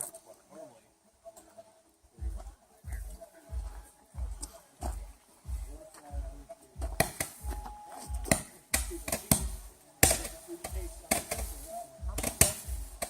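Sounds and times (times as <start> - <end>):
fireworks popping and cracking: 6.8 - 13.0.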